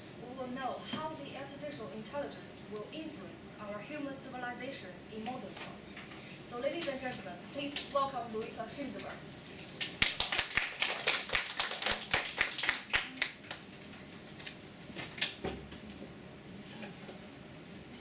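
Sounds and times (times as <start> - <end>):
thin audience applause: 10.0 - 13.6.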